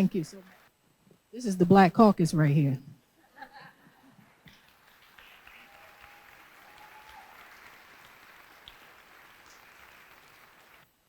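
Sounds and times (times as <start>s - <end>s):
audience applauding: 4.5s - 10.9s.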